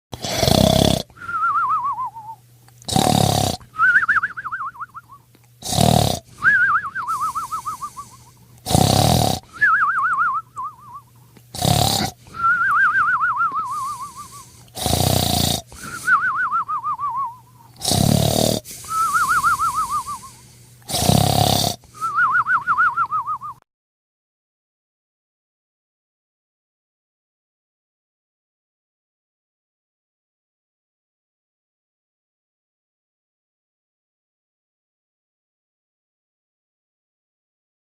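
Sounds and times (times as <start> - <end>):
cartoon rasping snore: 0.2 - 1.1, 2.9 - 3.7, 5.6 - 9.7, 11.5 - 12.3, 13.6 - 16.2, 17.8 - 22.1.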